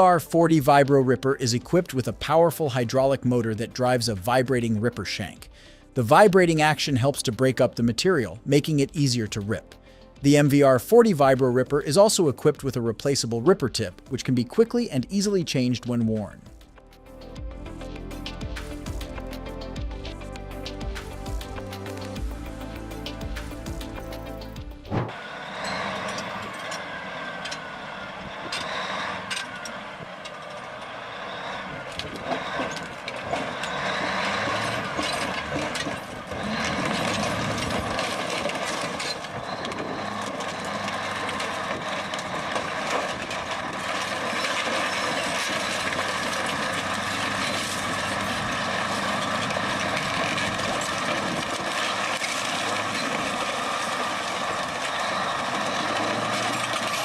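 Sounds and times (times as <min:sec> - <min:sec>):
heavy machinery din: 0:17.5 - 0:57.0
machinery clicks and knocks: 0:31.8 - 0:57.0.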